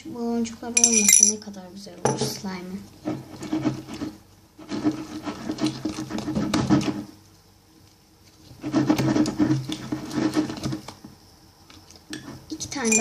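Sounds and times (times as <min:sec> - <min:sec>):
spoon stirring slime in a bowl: 0:00.8 - 0:01.5, 0:02.1 - 0:07.1, 0:08.2 - 0:11.0, 0:11.7 - 0:13.0.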